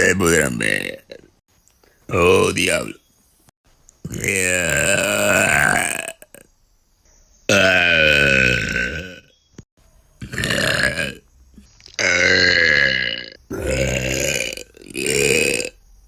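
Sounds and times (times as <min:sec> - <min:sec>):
woman burping: 0:07.5 - 0:09.3, 0:10.2 - 0:11.2, 0:12.0 - 0:15.8.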